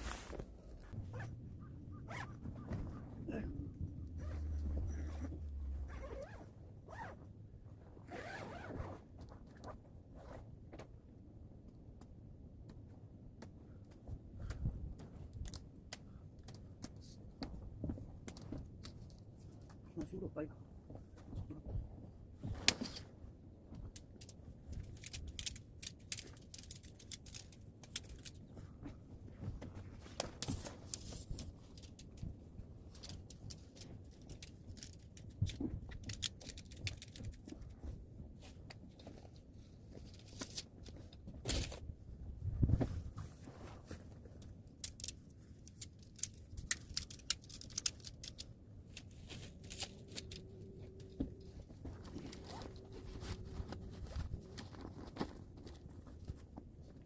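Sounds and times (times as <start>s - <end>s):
tent fabric rustling: 0.0s - 1.3s, 2.1s - 3.2s, 8.1s - 9.0s.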